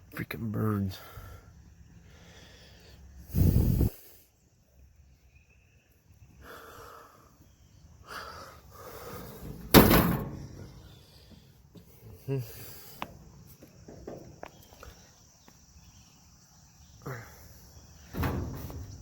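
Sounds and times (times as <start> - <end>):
puffs of blowing air: 2.1 - 4.4.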